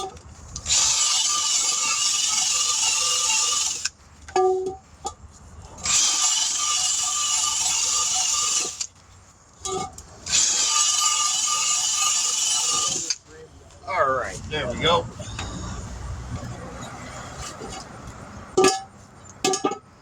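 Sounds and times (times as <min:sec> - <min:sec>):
rotary power tool whining: 0:00.0 - 0:04.0, 0:05.8 - 0:08.9, 0:09.7 - 0:13.2, 0:14.8 - 0:16.5.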